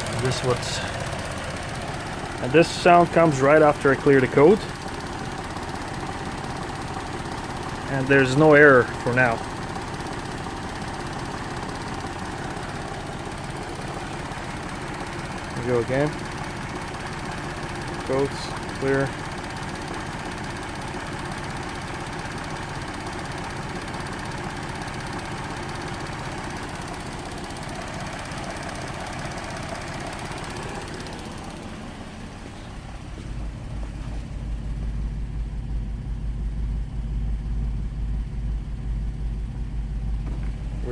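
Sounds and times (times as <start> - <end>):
car engine idling: 0.0 - 40.9
engine rattling and ticking: 0.0 - 40.9
deep low rumble: 32.7 - 40.9.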